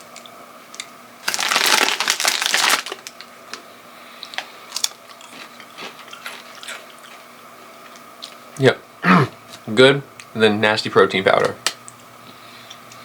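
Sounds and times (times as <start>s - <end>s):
chip bag crinkling: 1.2s - 3.6s, 4.2s - 7.1s.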